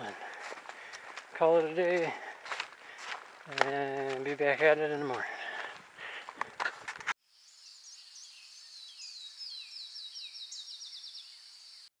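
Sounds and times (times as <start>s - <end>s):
footsteps: 0.0s - 7.2s
steady high-pitched hiss: 7.2s - 11.9s
bird singing whistles and trill: 7.5s - 11.9s.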